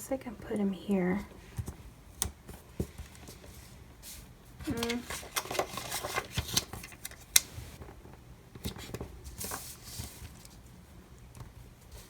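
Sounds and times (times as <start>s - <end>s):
paper rustle: 2.8s - 7.9s, 8.6s - 10.6s.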